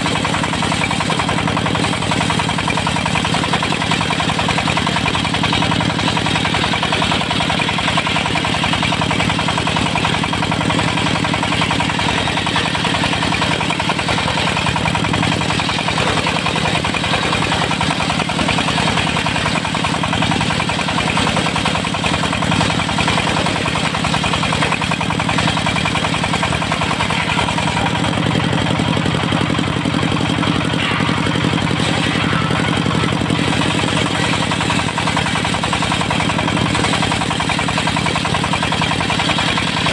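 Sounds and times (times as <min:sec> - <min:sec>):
circular saw rig running: 0:00.0 - 0:39.9.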